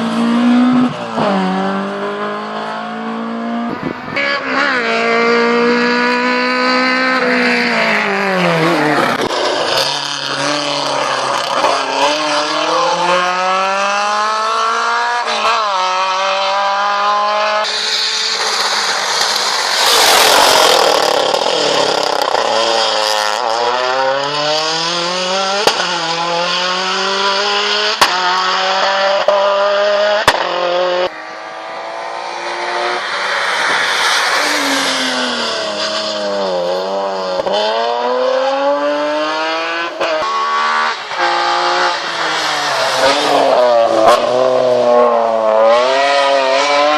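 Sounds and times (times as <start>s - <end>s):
race car engine shifting gears: 3.6s - 14.0s
loud rushing burst: 17.6s - 22.9s, 31.1s - 37.2s
sharp cracks: 17.7s - 22.5s.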